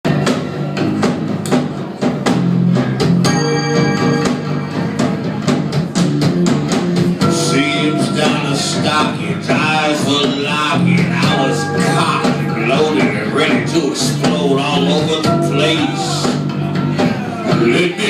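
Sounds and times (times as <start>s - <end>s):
bass: 0.0s - 18.0s
drum kit beat: 0.1s - 18.0s
sustained pitched instruments: 7.2s - 16.2s.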